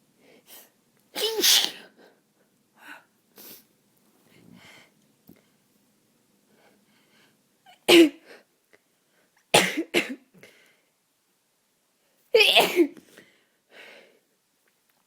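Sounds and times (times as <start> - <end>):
person sneezing wetly: 1.2 - 1.9, 12.4 - 13.0.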